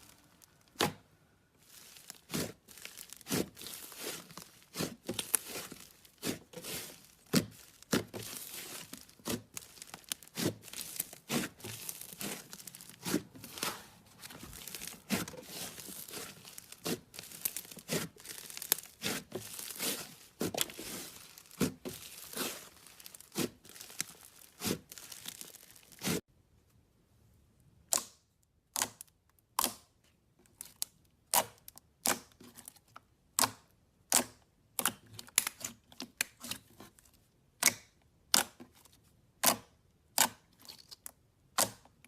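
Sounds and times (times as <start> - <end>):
slime squishing and popping: 1.8 - 26.2.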